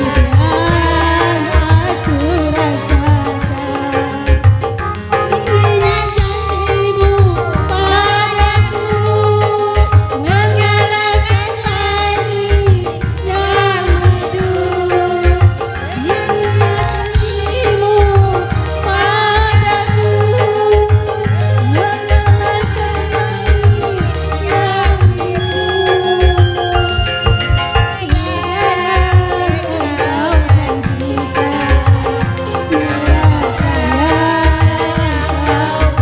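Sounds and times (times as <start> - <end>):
deep steady bass beat: 0.0 - 36.0
kendang hand drums: 0.0 - 36.0
person singing: 0.0 - 36.0.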